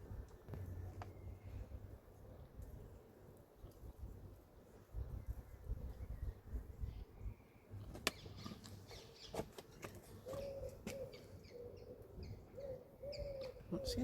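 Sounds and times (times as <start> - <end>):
small birds chirping: 0.3 - 14.0
pigeon cooing softly: 10.1 - 14.0.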